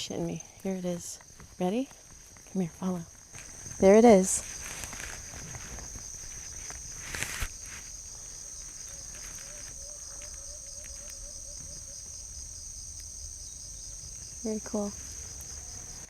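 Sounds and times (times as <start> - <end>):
insect chorus: 0.0 - 16.0
brief rustle: 4.4 - 7.9.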